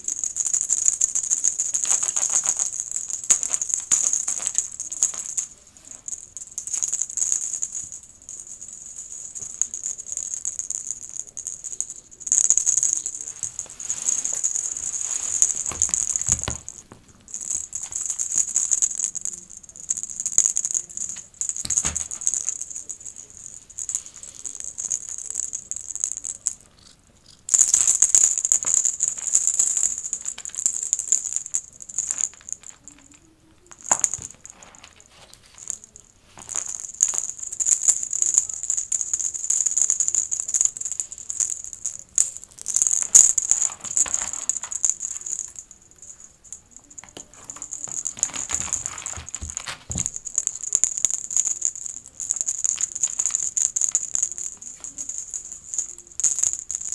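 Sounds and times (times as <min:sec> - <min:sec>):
rapid rattling: 0:00.0 - 0:56.9.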